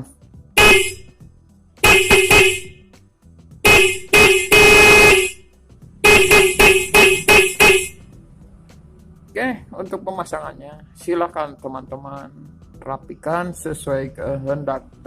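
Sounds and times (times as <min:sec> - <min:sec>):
motorcycle horn toots: 0:00.6 - 0:01.1, 0:01.8 - 0:02.8, 0:03.6 - 0:08.0.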